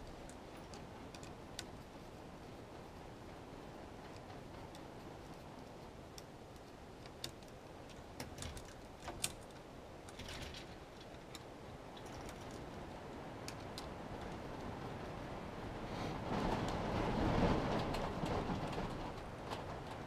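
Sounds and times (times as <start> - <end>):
light clicks and taps: 0.0 - 3.0, 3.9 - 12.8
low background noise: 0.0 - 20.0.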